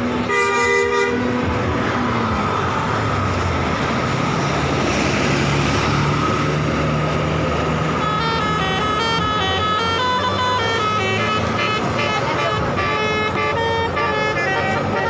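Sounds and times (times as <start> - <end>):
bus diesel engine: 0.0 - 15.0
road and tyre noise: 0.0 - 15.0.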